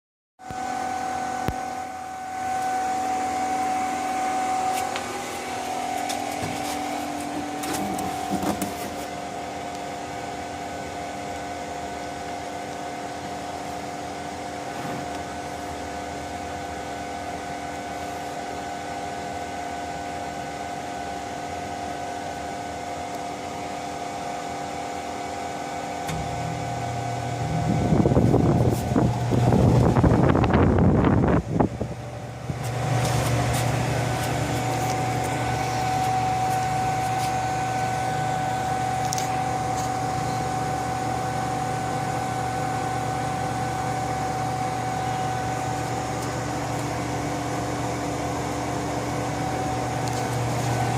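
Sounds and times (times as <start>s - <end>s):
deeper hum: 0.4s - 12.4s, 26.0s - 50.9s
fan noise: 0.4s - 50.9s
heat pump hum: 0.4s - 50.9s.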